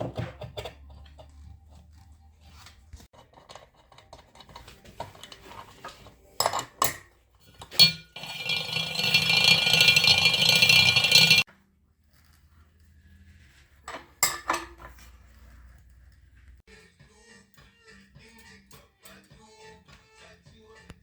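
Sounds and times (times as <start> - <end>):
metal tools clinking: 3.3 - 11.4.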